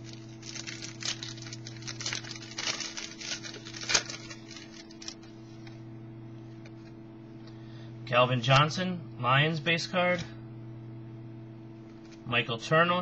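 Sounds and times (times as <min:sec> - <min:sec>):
trading cards clicking and rustling: 0:00.0 - 0:05.3
low electrical hum: 0:00.0 - 0:13.0.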